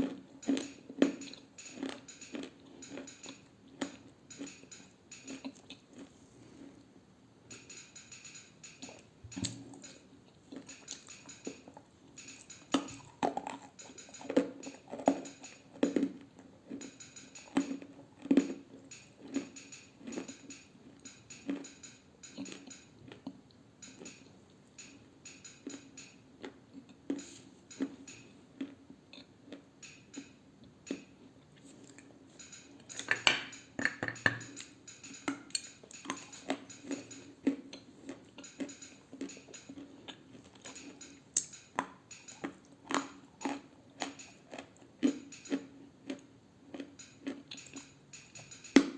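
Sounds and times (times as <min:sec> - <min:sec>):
crunching clay being chewed: 0:00.0 - 0:06.7, 0:08.9 - 0:21.7, 0:36.2 - 0:47.9.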